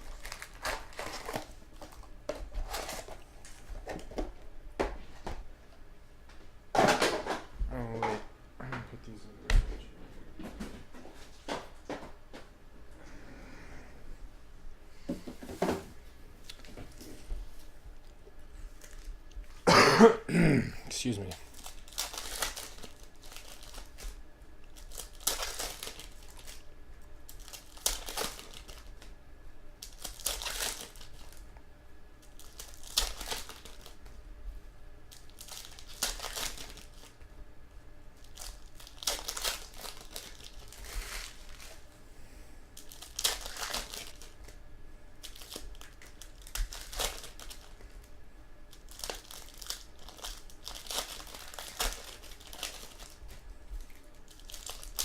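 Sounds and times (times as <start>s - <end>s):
plastic packaging crinkling: 0.0s - 4.2s, 21.0s - 29.1s, 29.8s - 31.4s, 32.2s - 34.1s, 35.1s - 37.2s, 38.2s - 41.9s, 42.8s - 44.6s, 45.2s - 48.1s, 48.7s - 55.0s.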